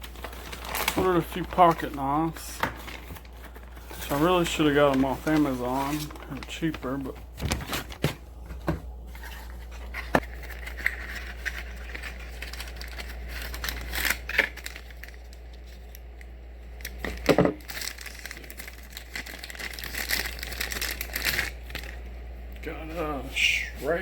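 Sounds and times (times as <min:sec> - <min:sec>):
packaging crinkling: 0:00.0 - 0:22.1.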